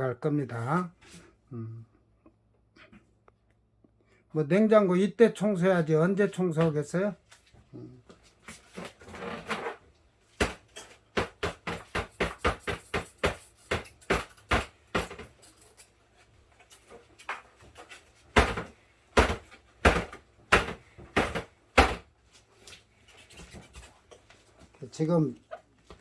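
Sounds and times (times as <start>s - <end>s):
refrigerator parts knocking: 10.4s - 15.4s, 17.7s - 22.1s.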